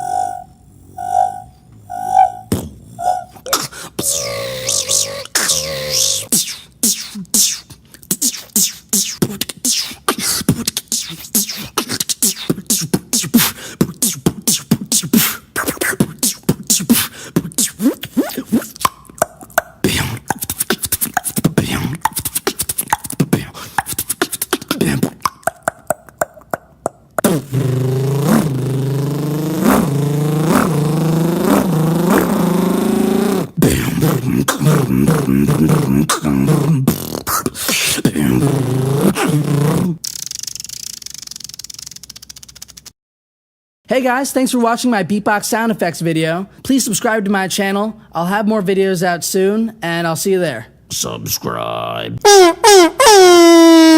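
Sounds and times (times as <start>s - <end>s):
vocal imitation of engine revving: 0.0s - 26.3s, 27.2s - 40.8s
beatboxing clicks and beats: 1.7s - 42.9s.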